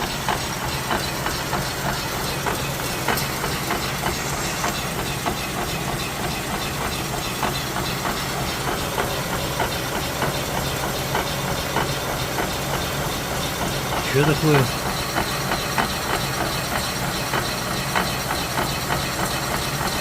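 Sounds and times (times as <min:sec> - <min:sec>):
rapid knocking from running gear: 0:00.0 - 0:20.0.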